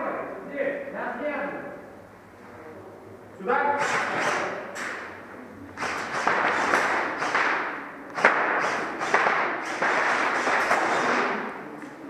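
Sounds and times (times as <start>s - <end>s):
airsoft guns firing bursts: 3.8s - 5.1s, 5.8s - 11.6s.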